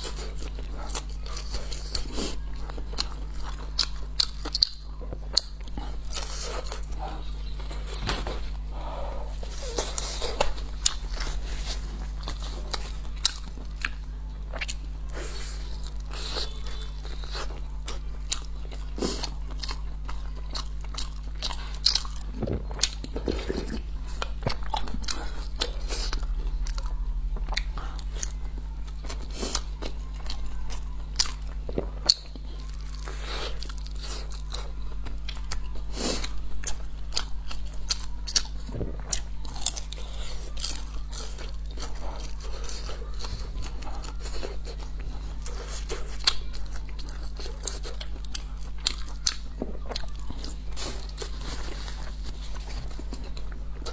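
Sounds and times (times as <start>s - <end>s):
crisp crunchy chewing: 0.0s - 53.9s
low electrical hum: 0.0s - 53.9s.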